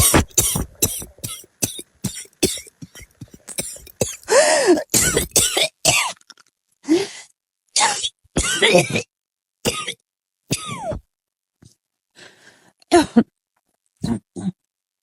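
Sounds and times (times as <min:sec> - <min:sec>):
person coughing: 0:00.0 - 0:06.1, 0:07.8 - 0:09.1.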